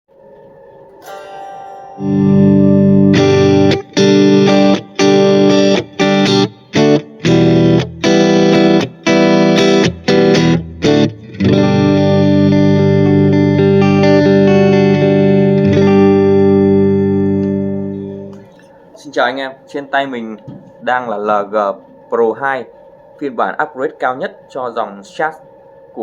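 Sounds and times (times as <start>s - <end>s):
distorted electric guitar chords: 0.9s - 18.7s.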